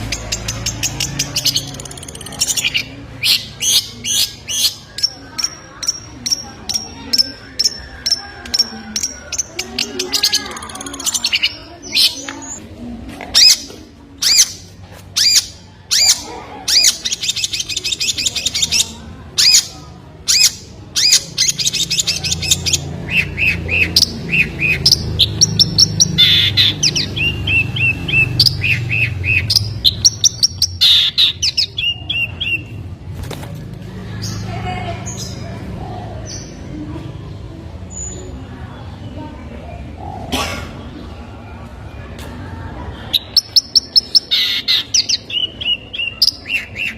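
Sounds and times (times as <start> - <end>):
songbird chirping and singing: 0.0 - 12.6, 13.4 - 32.8, 43.1 - 46.9.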